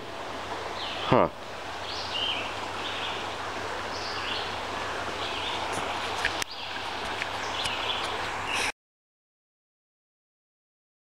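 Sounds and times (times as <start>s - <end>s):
river rushing: 0.0s - 8.7s.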